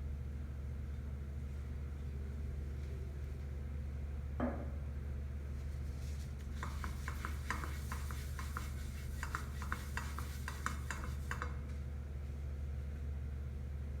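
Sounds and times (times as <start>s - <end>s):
steady low hum: 5.0s - 12.0s
utensil beating batter in a bowl: 5.8s - 11.8s.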